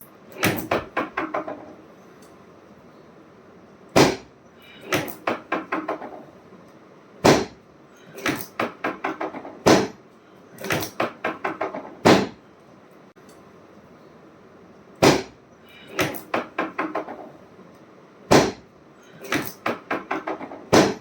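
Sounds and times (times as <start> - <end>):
loud sharp thumps: 4.0 - 4.3, 7.2 - 7.6, 8.2 - 10.0, 10.7 - 12.4, 15.0 - 15.4, 18.3 - 18.7, 19.6 - 21.0.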